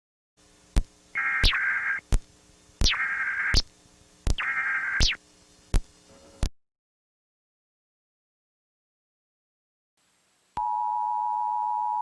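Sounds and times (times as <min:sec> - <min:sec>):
sharp clicks: 0:00.8 - 0:03.7, 0:04.3 - 0:05.9
digital data tone bursts: 0:01.2 - 0:02.1, 0:02.8 - 0:03.7, 0:04.3 - 0:05.2.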